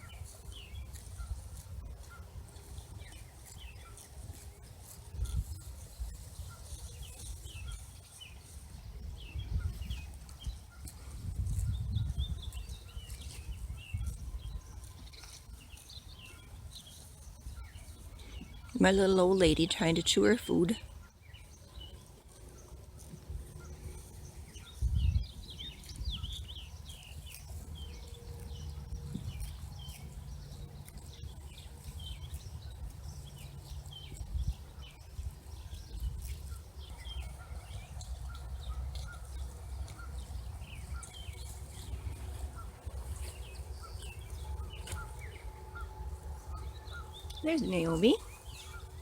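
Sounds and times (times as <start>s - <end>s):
small birds chirping: 0.0s - 49.0s
steady low rumble: 22.5s - 49.0s.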